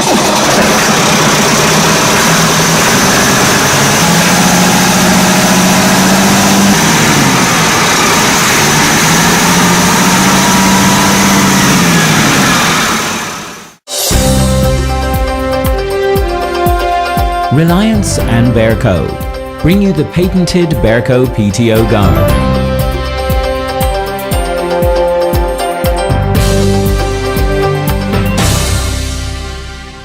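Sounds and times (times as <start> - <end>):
tractor engine running: 0.0 - 13.8, 17.5 - 25.0.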